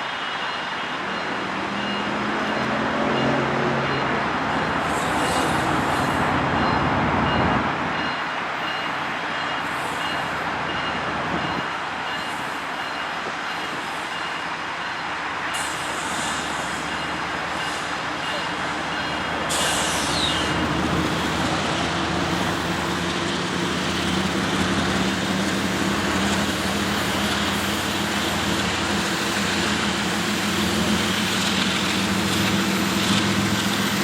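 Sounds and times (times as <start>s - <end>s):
vehicle noise: 0.0s - 8.6s.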